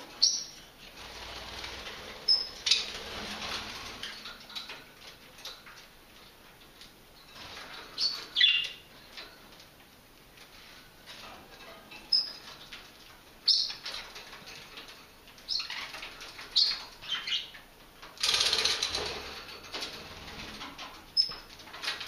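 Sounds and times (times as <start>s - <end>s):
wing flapping: 1.0s - 4.2s
soft bird chatter: 1.6s - 6.4s, 7.3s - 9.5s, 11.1s - 17.8s.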